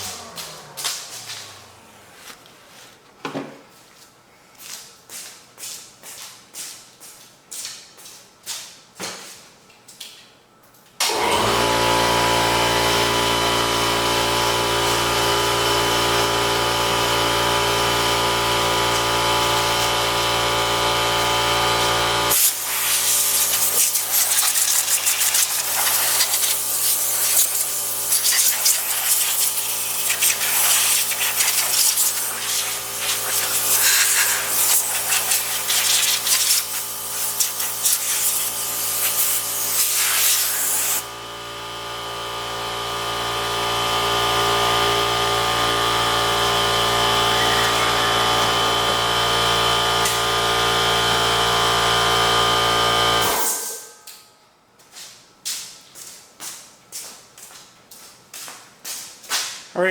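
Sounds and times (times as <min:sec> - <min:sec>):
shop vacuum running: 0:00.0 - 0:03.6, 0:11.0 - 0:54.2.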